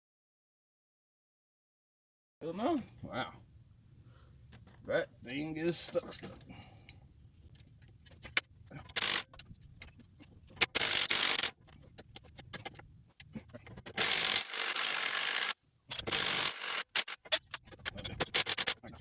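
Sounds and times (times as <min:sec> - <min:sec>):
tool clicks: 0:07.5 - 0:18.8
impact wrench bursts: 0:08.9 - 0:09.4, 0:10.6 - 0:11.6, 0:14.0 - 0:18.8.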